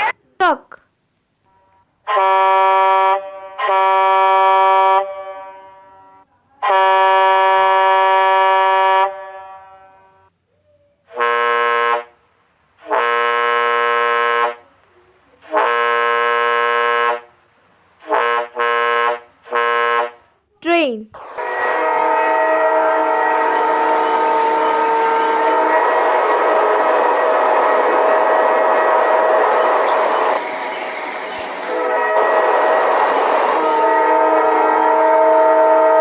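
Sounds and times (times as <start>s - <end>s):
truck air horn blasts: 1.5s - 10.2s, 11.1s - 12.2s, 12.8s - 14.6s, 15.5s - 17.3s, 18.0s - 20.2s, 21.4s - 30.1s, 31.7s - 36.0s.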